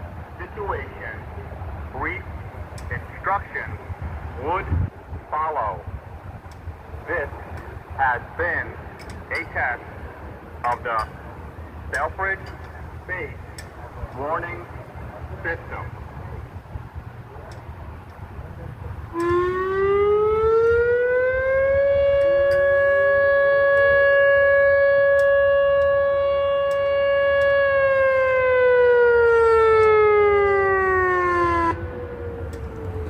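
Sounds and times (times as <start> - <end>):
fainter second siren: 17.3 - 33.0
warning siren rising and falling: 18.5 - 33.0.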